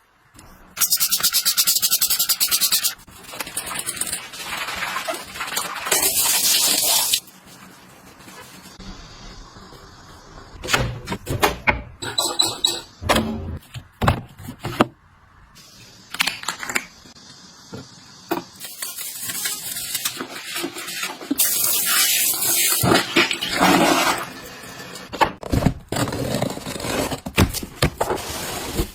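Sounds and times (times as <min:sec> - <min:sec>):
running water hissing: 0:03.8 - 0:07.3, 0:17.1 - 0:24.2.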